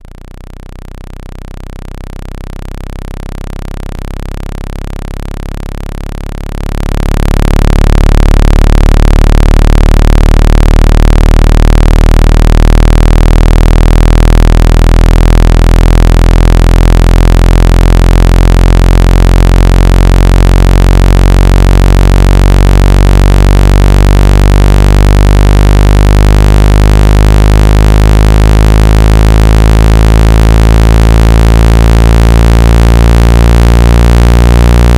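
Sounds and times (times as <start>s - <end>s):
synthesized low hum tone: 0.0s - 34.9s.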